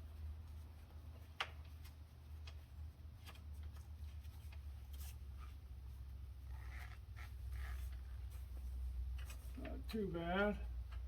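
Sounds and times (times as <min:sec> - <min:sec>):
faint scraping of parts: 0:03.2 - 0:09.8.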